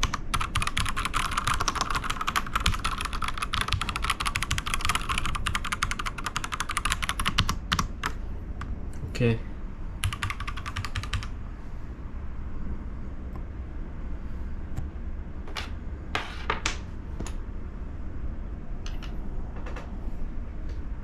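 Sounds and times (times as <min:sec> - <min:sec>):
mechanical keyboard clicks: 0:00.0 - 0:08.2, 0:10.0 - 0:11.3
steady low hum: 0:00.0 - 0:21.0.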